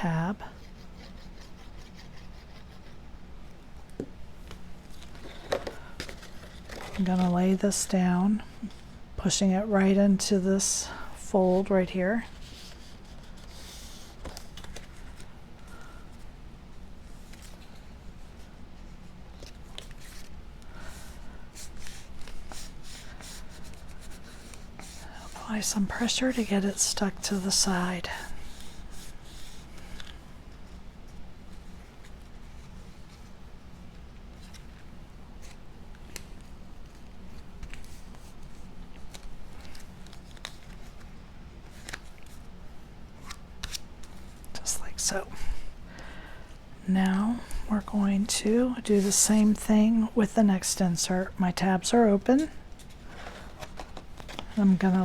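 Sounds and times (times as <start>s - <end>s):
low steady hum: 0.0s - 55.0s
paper rustling: 4.9s - 7.4s, 34.3s - 42.5s, 52.7s - 55.0s.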